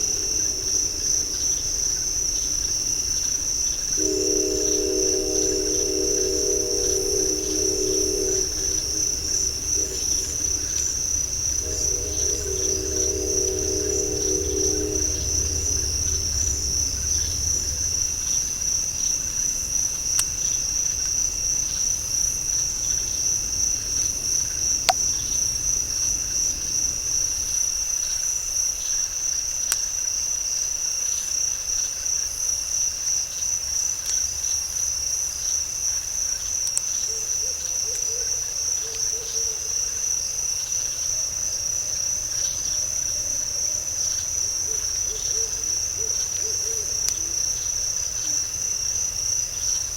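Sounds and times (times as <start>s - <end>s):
insect chorus trilling: 0.0s - 49.9s.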